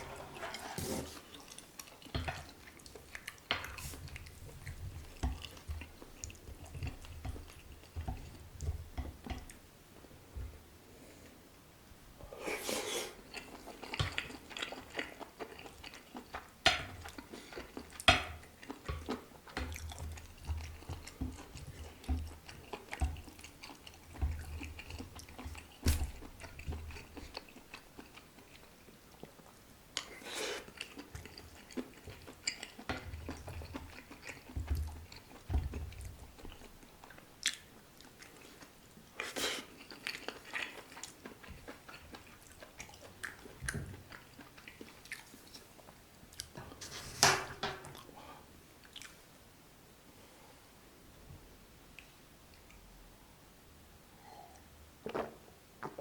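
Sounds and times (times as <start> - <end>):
person chewing food: 0.0 - 9.6, 12.3 - 46.8, 48.8 - 49.2.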